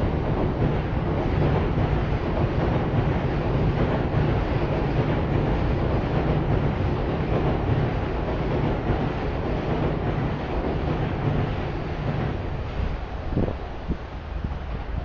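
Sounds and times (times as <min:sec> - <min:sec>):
city traffic rumble: 0:00.0 - 0:15.0.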